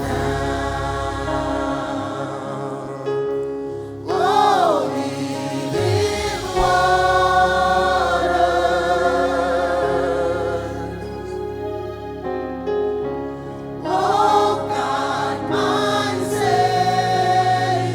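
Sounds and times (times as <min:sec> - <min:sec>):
gospel choir singing: 0:00.0 - 0:17.9.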